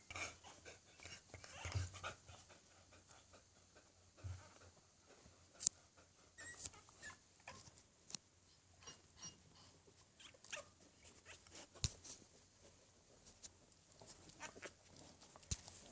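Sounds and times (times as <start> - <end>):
puppies squeaking and whimpering: 1.5 - 2.0, 6.4 - 7.7, 8.8 - 9.4, 10.2 - 11.6
soft clicks and scratches: 9.9 - 15.9.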